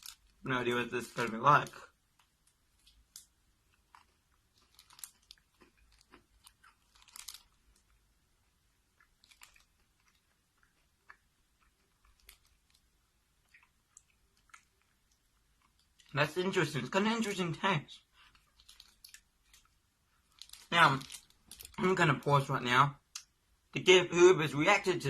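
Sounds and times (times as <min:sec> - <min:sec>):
chewing and crunching: 0:02.2 - 0:16.1, 0:18.1 - 0:21.9.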